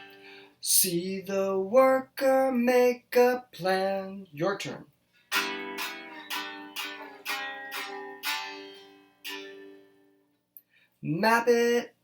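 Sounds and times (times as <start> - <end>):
string instrument strummed in chords: 5.3 - 10.2.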